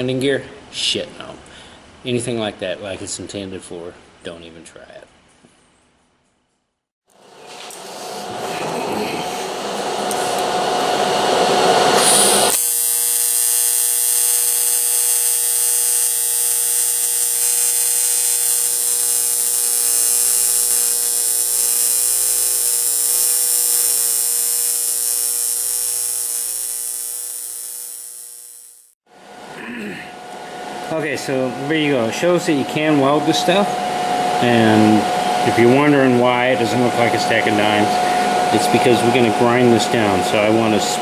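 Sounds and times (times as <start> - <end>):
welding arc buzzing: 7.1 - 29.0.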